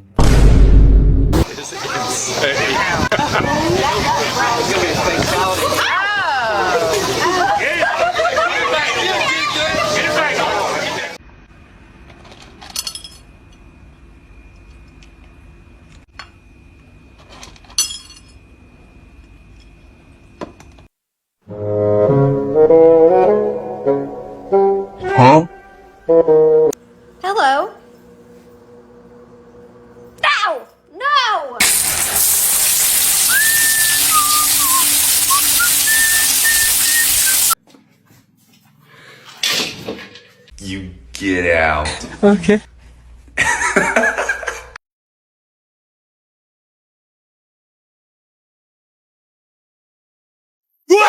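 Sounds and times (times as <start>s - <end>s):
loud steady hiss: 31.6s - 37.6s
whistled tune: 33.2s - 37.6s.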